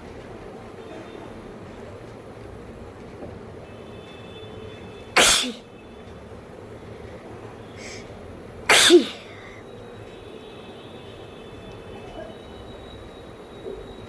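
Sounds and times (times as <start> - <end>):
woman sneezing: 5.2 - 5.6, 8.7 - 9.6.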